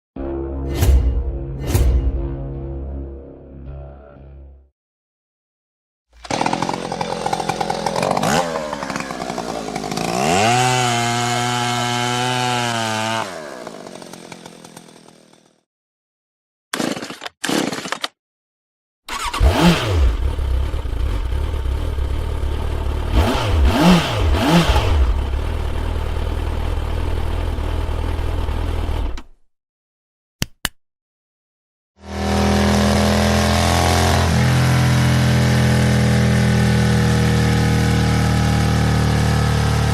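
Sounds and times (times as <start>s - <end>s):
motorcycle engine revving: 6.2s - 13.6s, 19.1s - 29.2s, 32.0s - 39.9s
motorcycle idling: 20.2s - 23.1s, 25.0s - 29.0s.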